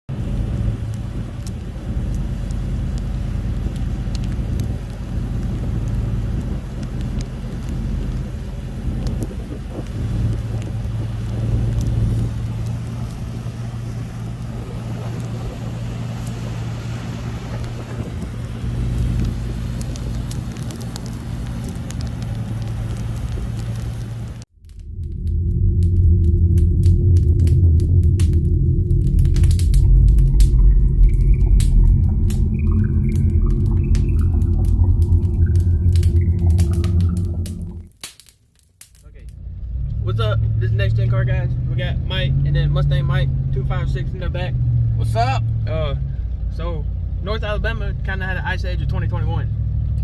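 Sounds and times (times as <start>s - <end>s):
road noise: 0.0s - 37.9s, 38.9s - 50.0s
vehicle engine droning: 0.0s - 37.9s, 39.0s - 50.0s.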